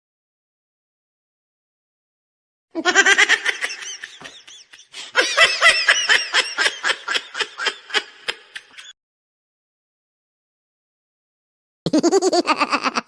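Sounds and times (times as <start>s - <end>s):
person laughing: 2.8s - 8.9s, 11.9s - 13.0s.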